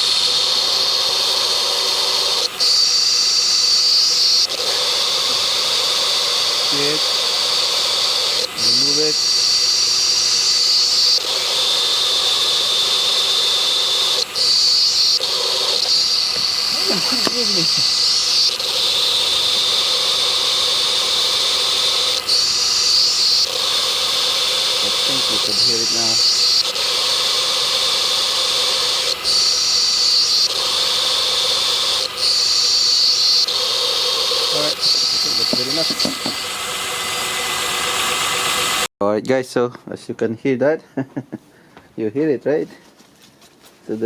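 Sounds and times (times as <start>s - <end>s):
power steering pump whine: 0.0s - 38.9s.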